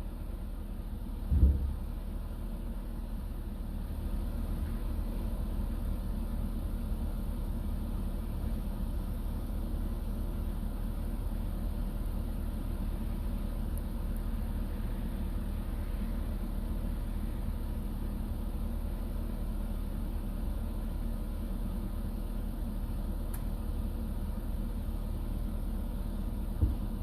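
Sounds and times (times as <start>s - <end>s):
low mechanical hum: 0.0s - 27.0s
short low thump: 1.2s - 1.9s, 26.6s - 26.9s.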